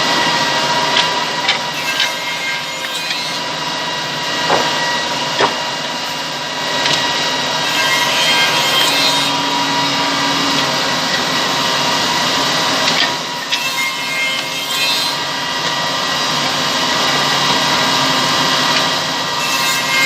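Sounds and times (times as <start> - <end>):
machine cutting wood: 0.0 - 20.0
woodworking machine whining: 0.0 - 20.0
sharp knocks: 4.5 - 5.7.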